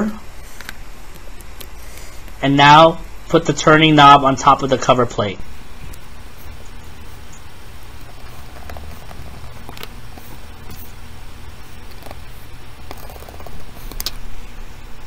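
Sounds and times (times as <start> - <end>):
low hum: 5.4 - 15.0.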